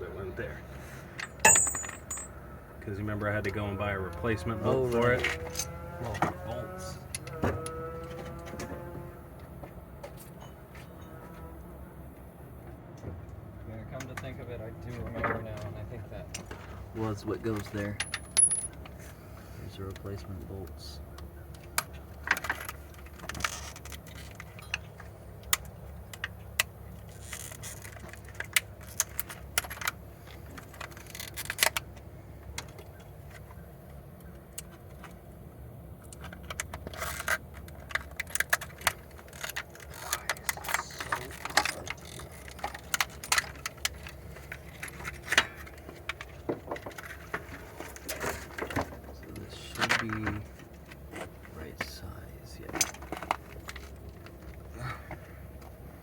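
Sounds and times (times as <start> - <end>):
steel bolts clinking: 1.2 - 2.4, 18.0 - 18.8.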